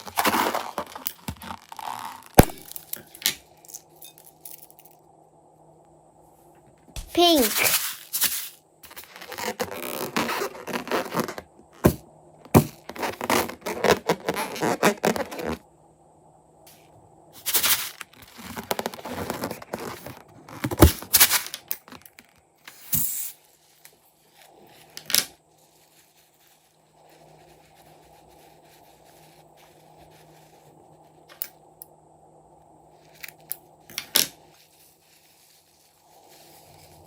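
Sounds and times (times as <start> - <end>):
slime crackling and scraping: 0.0 - 3.1
faint steady hum: 0.0 - 37.0.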